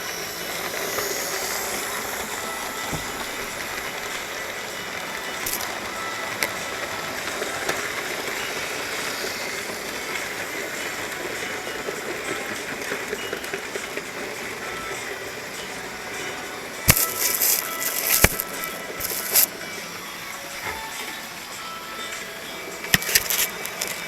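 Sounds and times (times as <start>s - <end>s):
model train running hiss: 0.0s - 24.0s
sharp clicks of model train: 0.0s - 24.0s.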